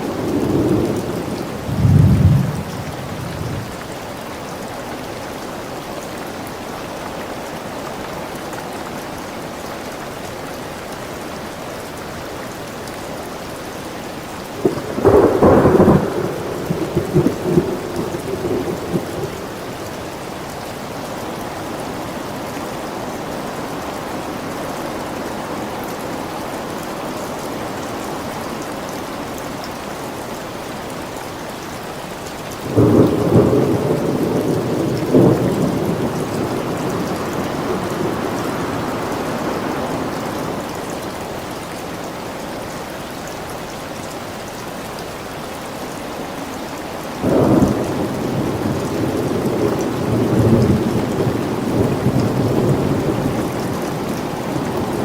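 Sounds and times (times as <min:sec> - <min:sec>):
thunder rumbling: 0:00.0 - 0:04.0, 0:14.6 - 0:20.2, 0:32.6 - 0:40.6, 0:47.2 - 0:55.0
steady rain: 0:00.0 - 0:55.0.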